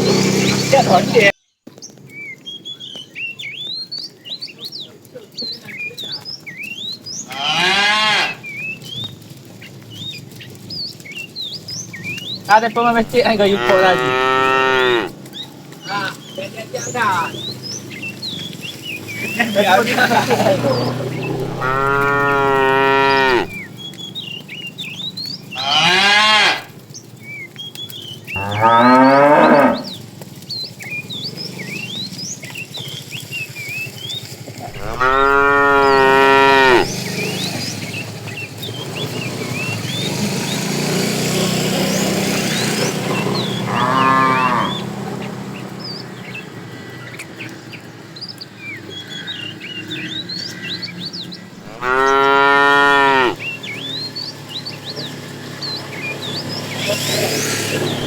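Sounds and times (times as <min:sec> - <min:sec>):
small birds chirping: 0:00.0 - 0:58.0
cow mooing: 0:07.3 - 0:08.4, 0:12.9 - 0:15.2, 0:19.8 - 0:23.6, 0:25.6 - 0:26.7, 0:28.4 - 0:30.0, 0:34.7 - 0:37.0, 0:42.8 - 0:44.8, 0:51.6 - 0:53.4.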